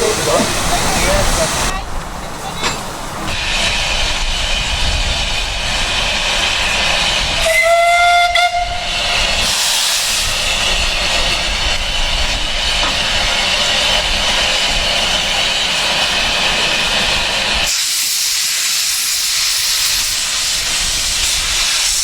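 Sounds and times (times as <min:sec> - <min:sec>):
locomotive hissing steam: 0:00.0 - 0:22.0
rush of escaping steam: 0:00.0 - 0:22.0
steam whistle blast: 0:07.4 - 0:09.6.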